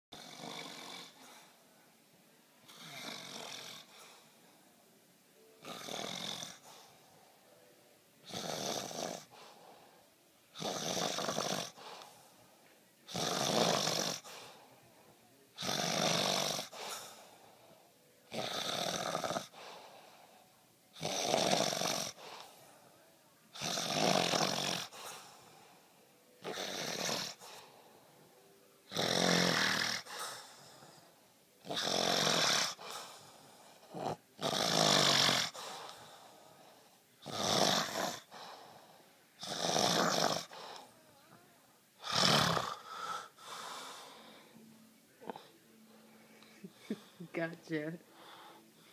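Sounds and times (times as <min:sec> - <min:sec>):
man snoring: 0:00.1 - 0:01.2, 0:02.7 - 0:03.9, 0:05.6 - 0:06.6, 0:08.2 - 0:09.4, 0:10.5 - 0:12.0, 0:13.1 - 0:14.6, 0:15.6 - 0:17.2, 0:18.3 - 0:19.8, 0:21.0 - 0:22.5, 0:23.5 - 0:25.0, 0:26.4 - 0:27.6, 0:28.8 - 0:31.0, 0:31.6 - 0:41.0, 0:42.0 - 0:44.6.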